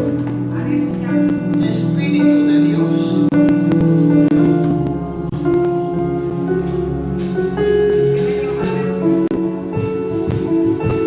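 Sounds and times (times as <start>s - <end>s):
worship music with sustained chords: 0.0s - 11.0s
percussion hits: 3.3s - 11.0s.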